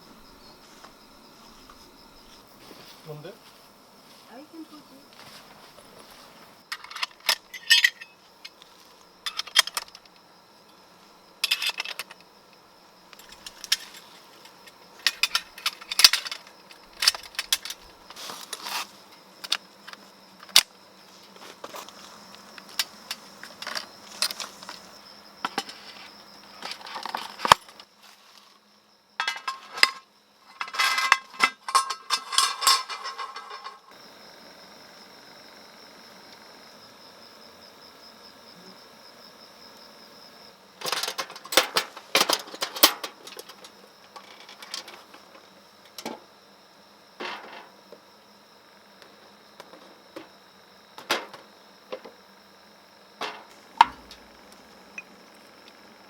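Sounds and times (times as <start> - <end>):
insect drone: 0.0 - 56.0
metallic clinking and rattling: 6.7 - 8.6, 9.2 - 10.2, 13.2 - 18.6, 29.2 - 33.9, 40.8 - 45.3, 53.2 - 54.4.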